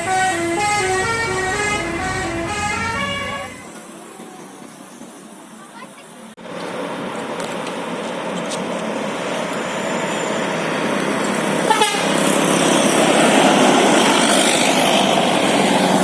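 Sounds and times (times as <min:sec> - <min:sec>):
bus horn melody: 0:00.0 - 0:03.8, 0:11.6 - 0:12.3
bus engine noise: 0:00.0 - 0:16.0.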